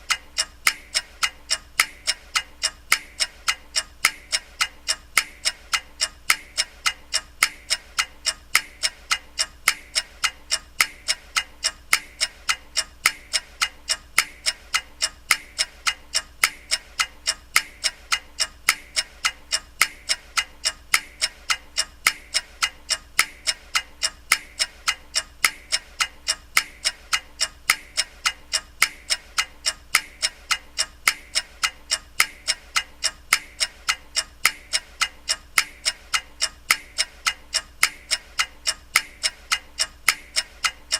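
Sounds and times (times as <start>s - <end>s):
clock ticking: 0.0s - 40.9s.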